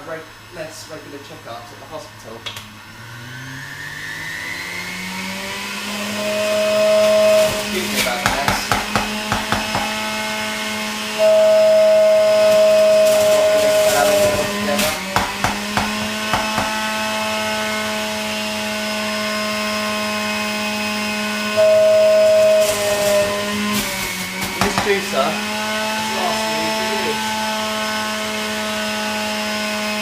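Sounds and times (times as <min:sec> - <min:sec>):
electric juicer motor whining: 0:02.2 - 0:30.0
knocks: 0:08.2 - 0:10.0, 0:14.3 - 0:16.9, 0:24.4 - 0:25.0.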